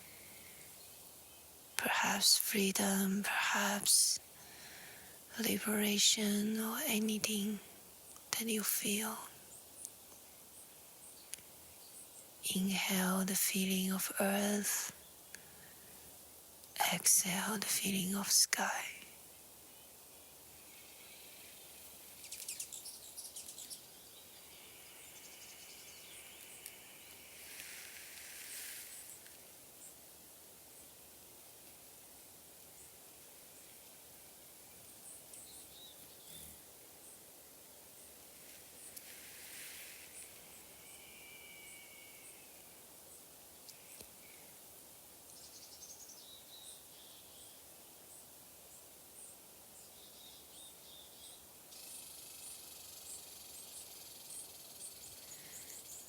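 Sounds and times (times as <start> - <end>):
steady hiss: 0.0 - 12.5, 14.2 - 49.9
soft rustle: 25.6 - 37.2, 37.8 - 44.6
high insect chirps: 51.7 - 56.0.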